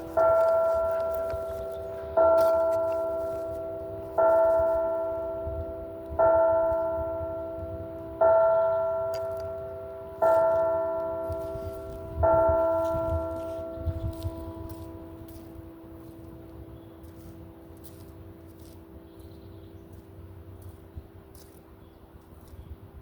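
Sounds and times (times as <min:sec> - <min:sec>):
church bell tolling: 0:00.0 - 0:17.0.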